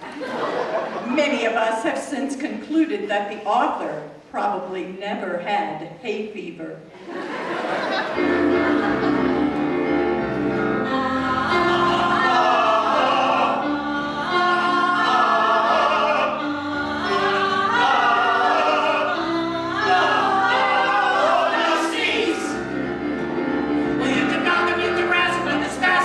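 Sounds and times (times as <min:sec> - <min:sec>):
sustained instrumental chords: 0:08.0 - 0:26.0
group of voices singing: 0:08.2 - 0:26.0.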